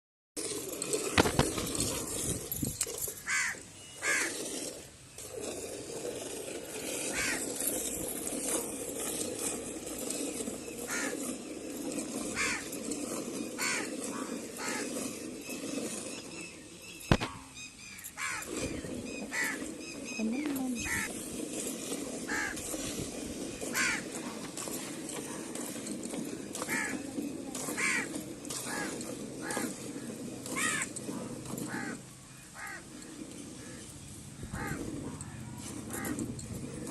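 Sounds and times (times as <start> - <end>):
crows cawing: 3.2 - 4.4, 7.1 - 7.4, 10.9 - 11.2, 12.3 - 12.8, 13.6 - 14.9, 18.1 - 18.6, 19.3 - 19.7, 20.9 - 21.1, 22.3 - 22.6, 23.7 - 24.1, 26.6 - 27.0, 27.7 - 30.9, 31.7 - 34.9, 35.9 - 36.2.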